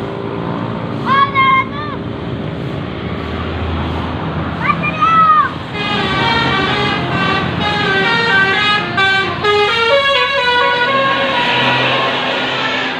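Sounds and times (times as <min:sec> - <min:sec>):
bus air horns playing a tune: 0:05.6 - 0:12.9.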